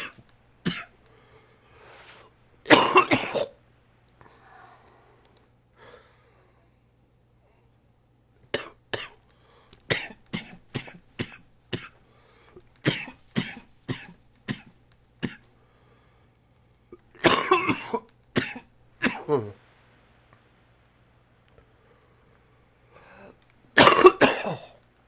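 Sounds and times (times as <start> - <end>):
man coughing: 2.7 - 3.6, 17.2 - 19.6, 23.8 - 24.8.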